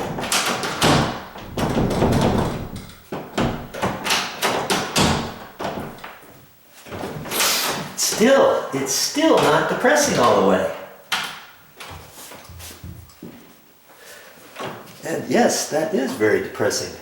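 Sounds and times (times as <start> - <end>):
door being pushed shut: 0.0 - 6.1
door latch knocking and scraping: 0.0 - 6.2.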